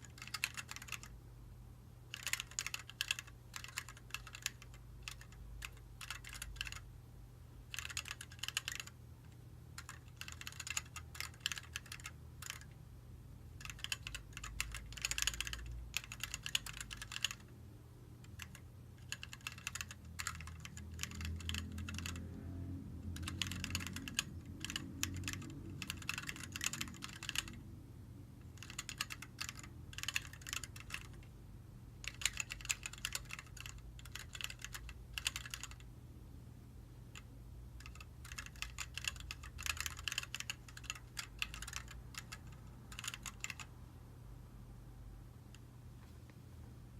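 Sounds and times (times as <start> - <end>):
mechanical keyboard typing: 0.0 - 1.2, 2.1 - 6.9, 7.7 - 9.0, 9.7 - 12.8, 13.6 - 17.5, 18.2 - 22.3, 23.0 - 27.6, 28.4 - 31.3, 32.0 - 35.9, 37.1 - 43.7.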